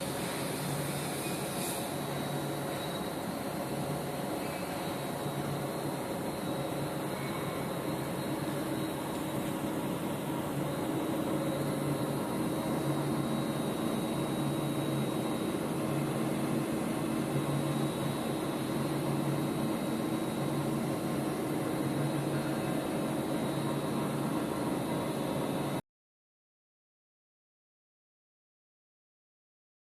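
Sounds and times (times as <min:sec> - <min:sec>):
lathe machine humming: 0:00.0 - 0:25.8.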